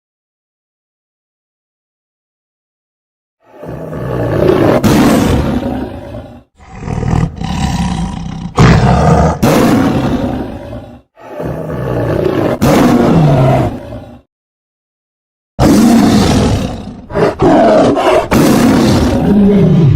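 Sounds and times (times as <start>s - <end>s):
tiger roaring: 3.4s - 14.3s, 15.6s - 19.9s.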